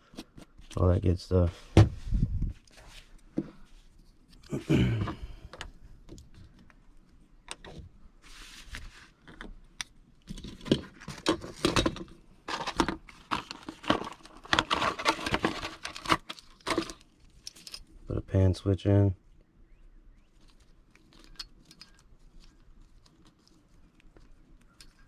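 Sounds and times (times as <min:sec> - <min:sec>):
hand tools clicking and rattling: 0:10.4 - 0:17.9, 0:20.5 - 0:23.2.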